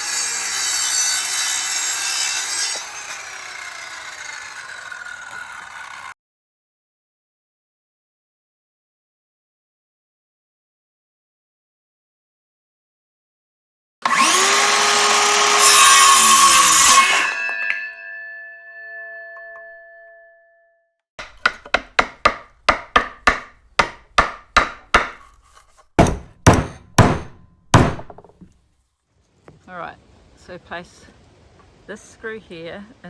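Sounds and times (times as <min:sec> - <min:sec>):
power saw cutting timber: 0:00.0 - 0:06.2, 0:14.0 - 0:17.6, 0:21.2 - 0:28.1
metallic ring: 0:17.2 - 0:20.7
hammer nailing into wood: 0:21.2 - 0:28.4.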